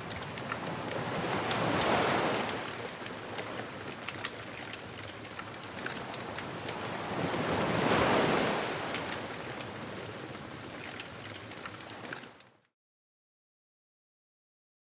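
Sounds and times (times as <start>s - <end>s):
surf washing in: 0.0s - 4.2s, 5.8s - 10.7s
wood fire crackling: 0.0s - 12.6s.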